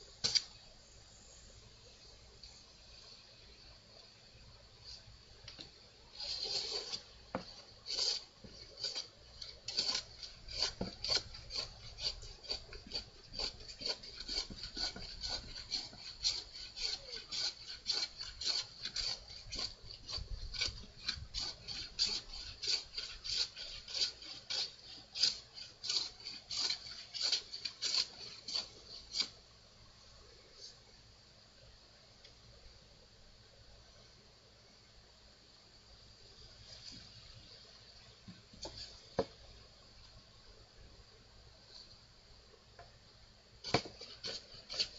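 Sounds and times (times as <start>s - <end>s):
hand tool rasping wood: 6.2s - 29.4s, 43.6s - 44.9s.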